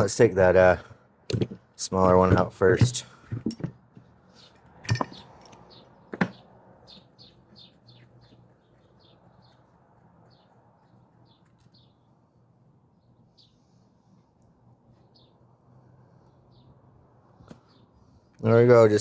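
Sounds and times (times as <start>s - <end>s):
sharp knocks: 6.1s - 6.5s.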